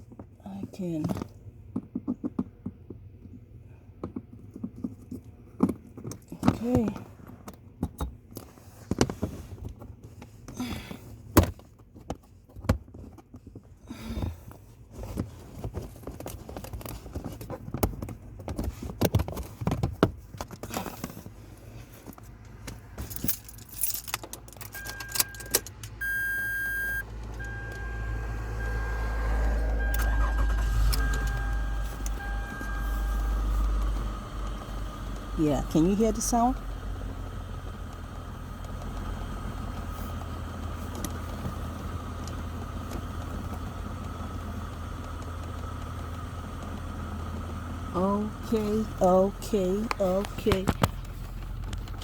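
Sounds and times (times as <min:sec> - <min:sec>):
handling clicks and knocks: 0:00.0 - 0:26.1, 0:27.0 - 0:52.0
car engine starting and running: 0:20.5 - 0:52.0
keys jangling: 0:23.0 - 0:26.0
car warning chime beeping: 0:24.7 - 0:36.6.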